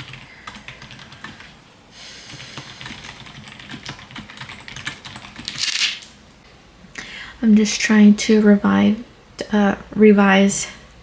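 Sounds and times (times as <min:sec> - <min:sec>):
typing on computer keyboard: 0:00.0 - 0:01.6, 0:02.3 - 0:05.7.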